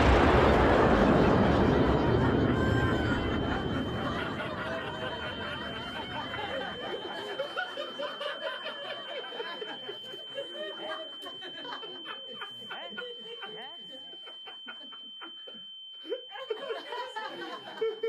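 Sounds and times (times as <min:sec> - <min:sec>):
low rumble: 0:00.0 - 0:07.1
steady high tone: 0:00.0 - 0:09.8
crowd laughing: 0:00.0 - 0:18.0.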